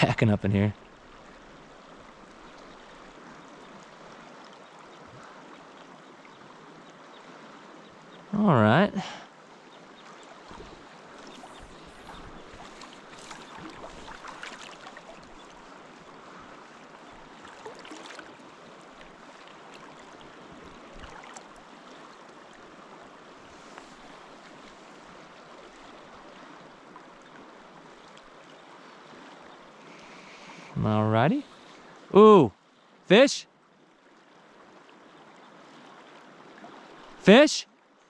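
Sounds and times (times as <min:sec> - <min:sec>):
river flowing: 0:00.0 - 0:38.0
faint knocks and splashes: 0:10.4 - 0:15.6, 0:17.4 - 0:18.4, 0:19.0 - 0:21.7.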